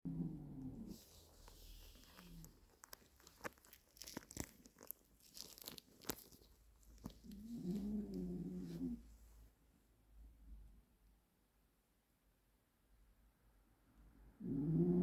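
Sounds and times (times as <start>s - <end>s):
small clicks and crackles: 0.9s - 8.8s.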